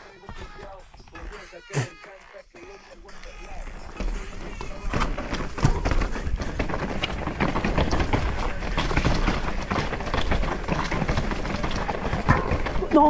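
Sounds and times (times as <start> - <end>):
bike clattering over rocks: 3.3 - 13.0.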